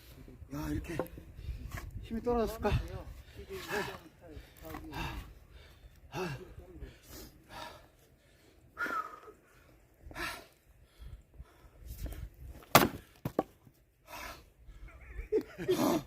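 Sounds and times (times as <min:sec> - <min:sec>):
voice: 0:02.0 - 0:05.2
man breathing hard: 0:03.1 - 0:12.4, 0:14.0 - 0:14.9.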